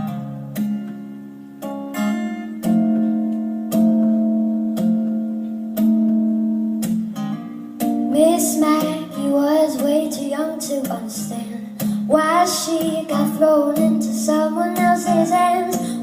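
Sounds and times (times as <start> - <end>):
guitar chords ringing: 0.0 - 16.0
person singing: 8.1 - 16.0.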